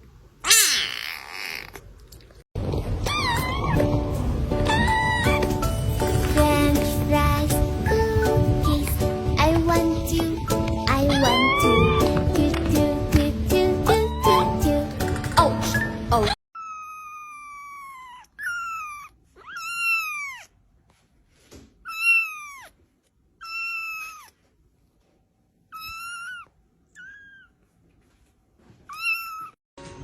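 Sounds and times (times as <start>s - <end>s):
kitten meowing: 0.5s - 1.8s, 3.0s - 3.9s, 4.7s - 5.6s, 11.0s - 12.1s, 16.6s - 20.5s, 21.9s - 22.8s, 23.4s - 24.3s, 25.7s - 27.5s, 28.9s - 29.6s.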